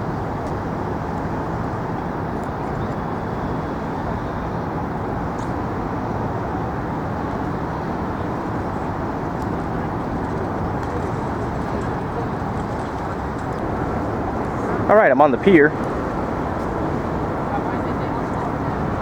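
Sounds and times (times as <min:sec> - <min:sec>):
city traffic rumble: 0:00.0 - 0:19.0.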